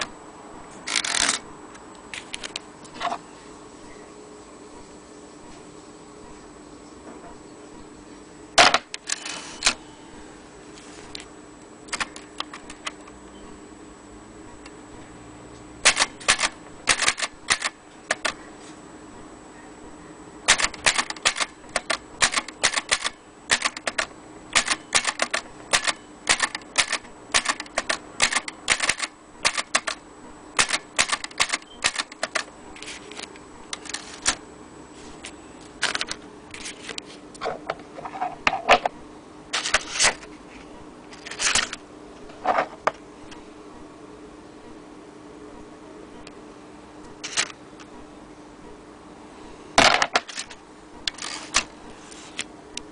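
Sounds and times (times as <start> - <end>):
manual typewriter typing: 0.9 - 1.4, 15.9 - 18.4, 20.5 - 30.0, 30.6 - 32.5.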